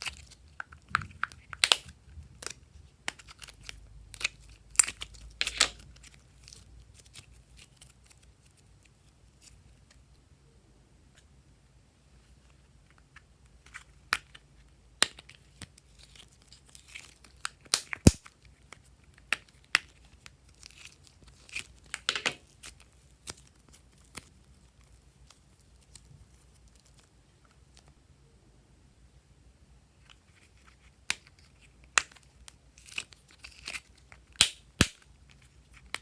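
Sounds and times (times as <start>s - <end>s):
slime popping and crackling: 0.0s - 7.9s, 15.0s - 18.4s, 31.0s - 36.0s.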